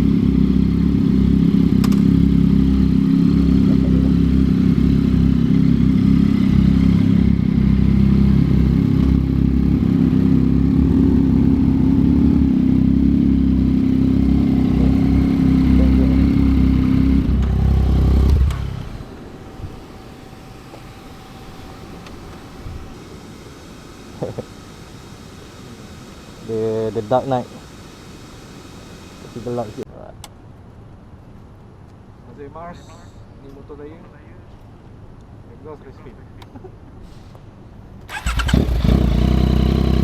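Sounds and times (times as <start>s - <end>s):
motorcycle engine running: 0.0s - 29.8s, 38.1s - 40.0s.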